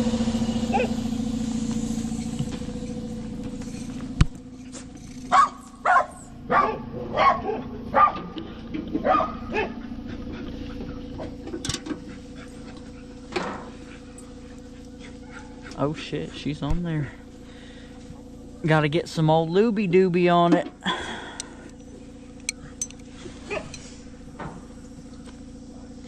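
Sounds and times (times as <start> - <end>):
steady low hum: 0.0 - 26.0
dog barking: 0.7 - 1.0, 5.3 - 8.4, 9.0 - 9.8, 14.9 - 15.8, 23.5 - 23.7.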